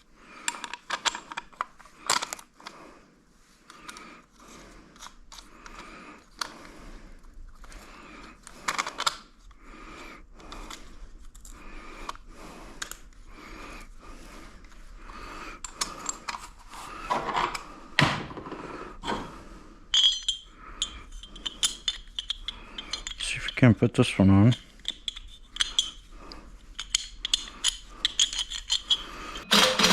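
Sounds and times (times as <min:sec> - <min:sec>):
hand tool rasping strokes: 0:29.3 - 0:29.9
metallic clanks: 0:29.4 - 0:29.9.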